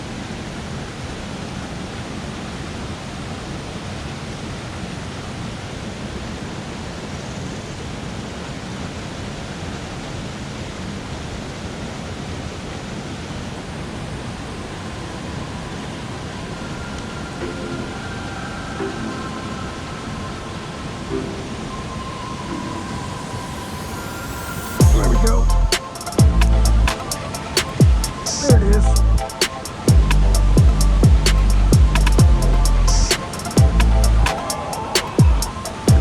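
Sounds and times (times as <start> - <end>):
waterfall roar: 0.0 - 31.7
faint music: 14.6 - 36.0.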